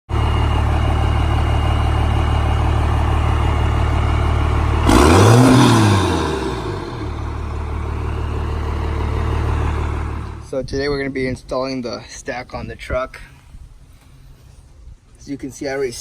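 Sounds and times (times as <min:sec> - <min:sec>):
diesel engine idling and revving: 0:00.1 - 0:10.6.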